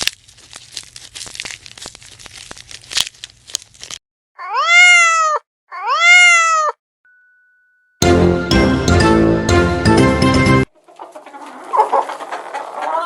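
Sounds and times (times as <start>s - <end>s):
crackling rustling noise: 0.0s - 4.0s, 10.8s - 13.0s
cat meowing: 4.4s - 6.8s.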